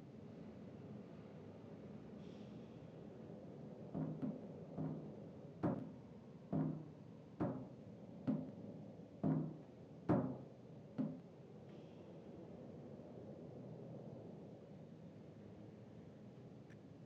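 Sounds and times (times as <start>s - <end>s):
low drum-like knocks: 6.5s - 7.7s.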